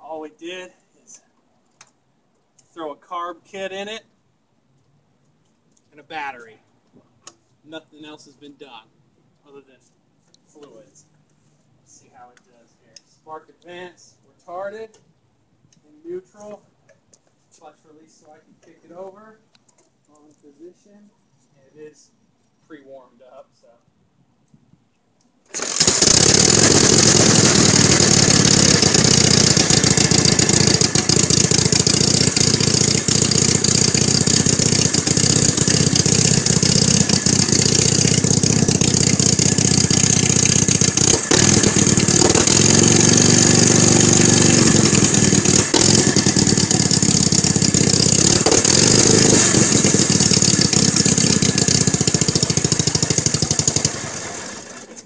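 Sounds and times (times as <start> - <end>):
motorcycle engine running: 25.5 - 55.0.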